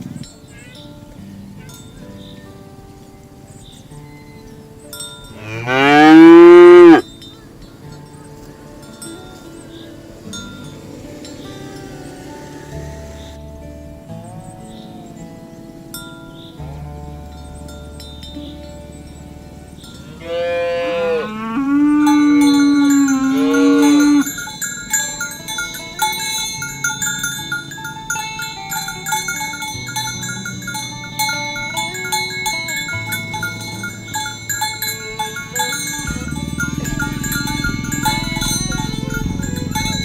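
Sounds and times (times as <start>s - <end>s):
chiming bell-like tones: 0.0s - 13.4s, 14.4s - 40.0s
cow mooing: 5.3s - 7.1s, 20.1s - 24.4s.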